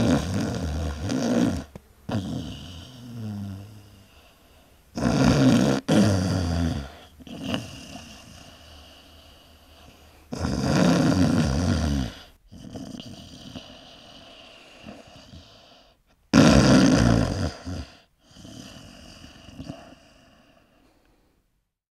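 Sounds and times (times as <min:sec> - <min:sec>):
man snoring loudly: 0:00.0 - 0:04.0, 0:04.9 - 0:08.6, 0:10.3 - 0:15.5, 0:16.3 - 0:20.1
quiet breathing: 0:00.0 - 0:05.0, 0:06.5 - 0:10.4, 0:12.0 - 0:16.2, 0:17.5 - 0:21.6.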